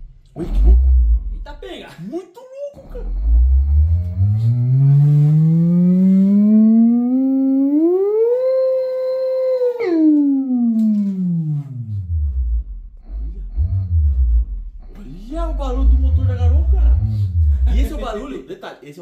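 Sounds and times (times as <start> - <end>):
electronic motor whine from loudspeaker: 2.8 - 9.3, 10.8 - 18.3.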